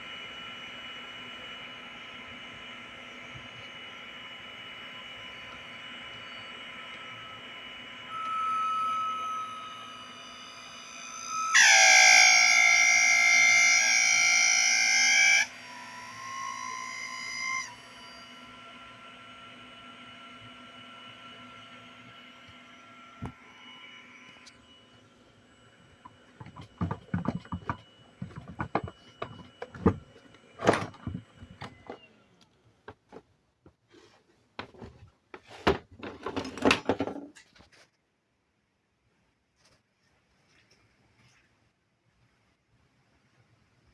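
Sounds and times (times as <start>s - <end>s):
pump motor buzzing whine: 0.0s - 33.1s.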